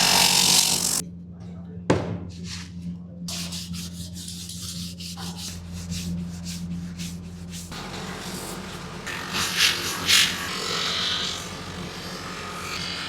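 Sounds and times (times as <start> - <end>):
steady low hum: 0.0 - 13.0
sandpaper rubbing on wood: 3.3 - 8.6.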